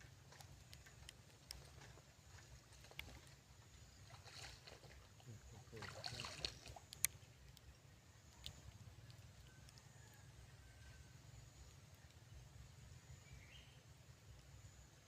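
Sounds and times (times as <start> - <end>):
low steady rumble: 0.0 - 15.0
water splashing against boat: 1.6 - 7.0.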